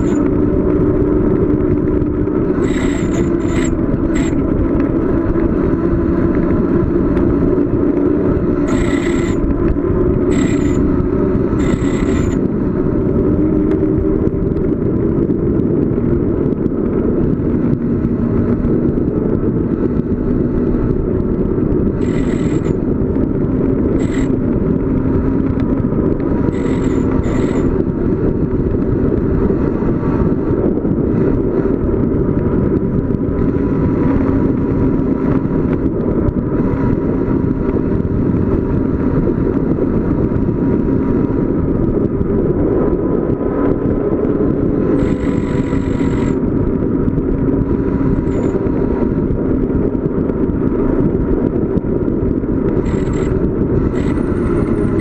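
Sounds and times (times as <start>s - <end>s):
road rumble: 0.0s - 55.0s
wavering hum: 0.0s - 55.0s
wind rushing: 0.0s - 55.0s
short high-pitched bursts: 2.6s - 4.4s, 8.7s - 9.5s, 10.3s - 10.9s, 11.6s - 12.4s, 24.0s - 24.3s, 26.5s - 27.7s.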